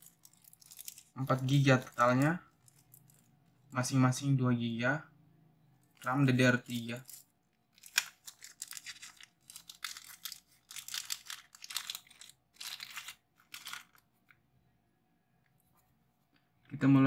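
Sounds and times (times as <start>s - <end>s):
packaging crinkling: 0.0s - 3.7s, 5.9s - 14.1s.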